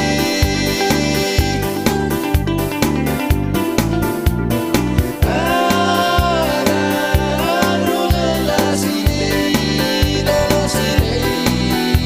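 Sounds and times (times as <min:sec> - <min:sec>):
person singing: 0:00.0 - 0:01.9, 0:05.2 - 0:12.0.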